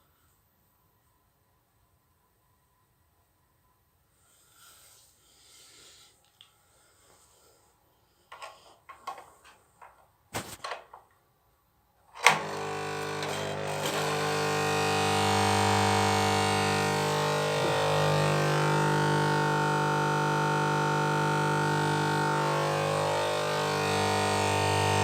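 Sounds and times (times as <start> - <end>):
fluorescent ballast buzzing: 12.2 - 25.0.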